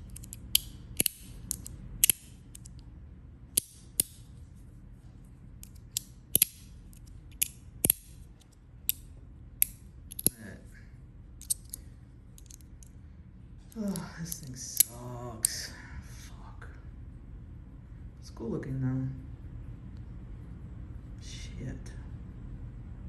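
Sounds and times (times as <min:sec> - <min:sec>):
metal fidget toy clicking: 0:00.0 - 0:02.7, 0:05.6 - 0:08.1, 0:09.6 - 0:10.4, 0:11.4 - 0:11.8, 0:12.4 - 0:12.6.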